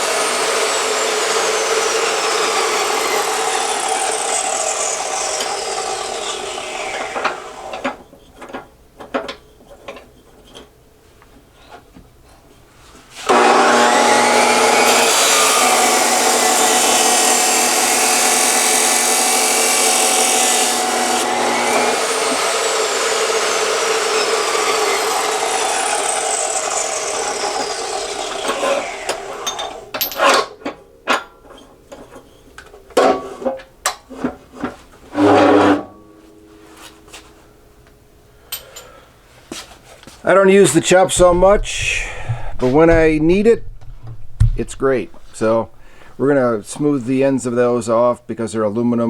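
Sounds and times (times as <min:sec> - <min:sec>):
saw blade spinning down: 0:00.0 - 0:07.8, 0:13.2 - 0:29.9
chop saw cutting metal: 0:00.0 - 0:08.0, 0:13.2 - 0:30.6, 0:35.2 - 0:35.8.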